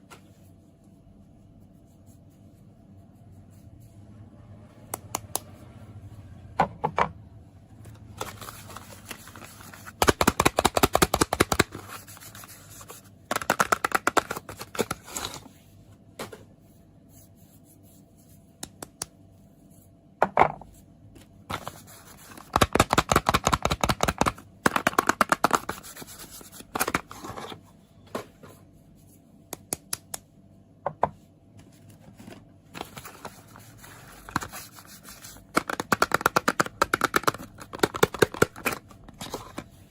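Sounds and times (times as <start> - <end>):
tapping on soap packaging: 35.5 - 38.8.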